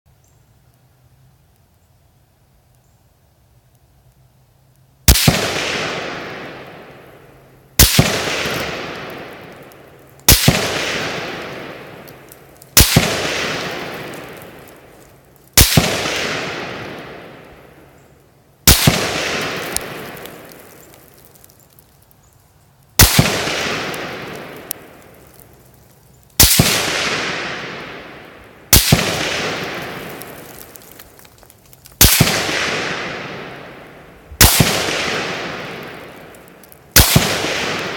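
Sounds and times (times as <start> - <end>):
gunshot echo: 5.1 - 7.0, 7.8 - 12.2, 12.8 - 14.9, 15.6 - 17.6, 18.7 - 20.8, 23.0 - 25.0, 26.4 - 31.0, 32.0 - 36.3, 36.9 - 37.9
rifle shots: 5.1 - 7.0, 7.8 - 14.8, 15.6 - 17.6, 18.6 - 20.8, 23.0 - 25.0, 26.4 - 30.9, 32.0 - 37.9.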